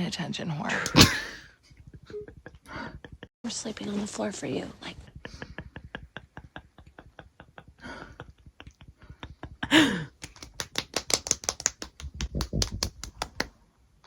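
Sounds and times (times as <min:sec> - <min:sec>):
rapid even clicking: 0:10.2 - 0:13.6.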